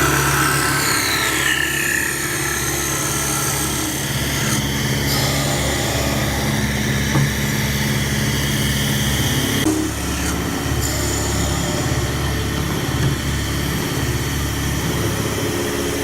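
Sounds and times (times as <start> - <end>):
high whine: 0.0 - 16.0
machine motor hum: 0.0 - 16.0.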